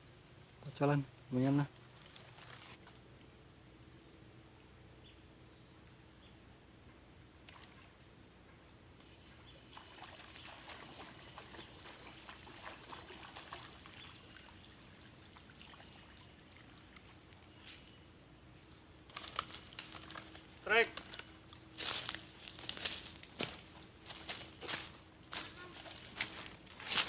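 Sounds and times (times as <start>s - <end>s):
high insect drone: 0.0s - 27.0s
water splashing and dripping: 9.2s - 17.5s.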